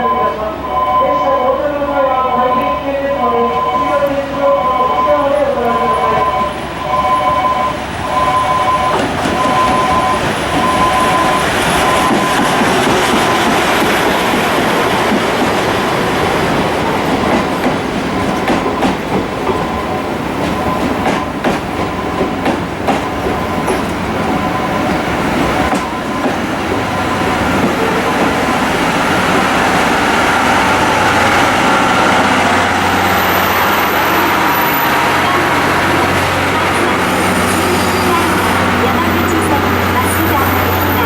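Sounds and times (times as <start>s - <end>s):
repeating warning tone: 0.0s - 13.6s
steam train wheels clacking: 8.5s - 41.0s.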